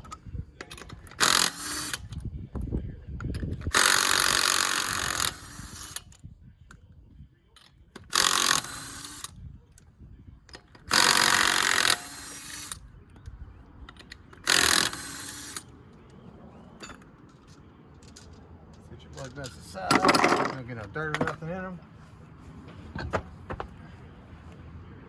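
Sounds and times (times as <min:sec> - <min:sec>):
impact wrench bursts: 0:01.1 - 0:02.1, 0:03.7 - 0:06.0, 0:08.0 - 0:09.3, 0:10.8 - 0:12.8, 0:14.3 - 0:15.7.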